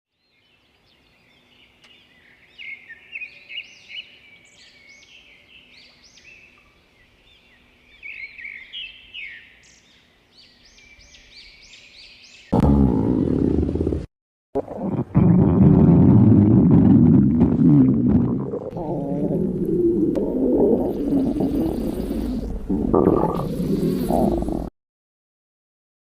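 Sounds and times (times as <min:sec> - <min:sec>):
cartoon stomach growl: 0:12.6 - 0:24.7
faint steady hum: 0:16.2 - 0:24.7
birds chirping: 0:17.5 - 0:24.7.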